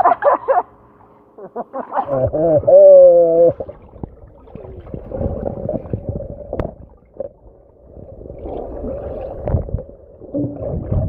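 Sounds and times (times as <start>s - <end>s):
water gurgling and sloshing: 3.0s - 11.0s.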